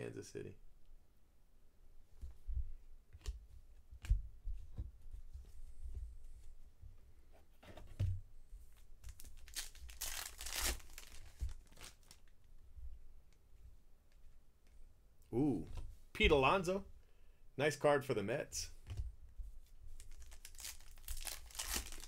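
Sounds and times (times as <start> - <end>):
foil wrapper tearing and crinkling: 9.1 - 12.3, 20.0 - 22.0.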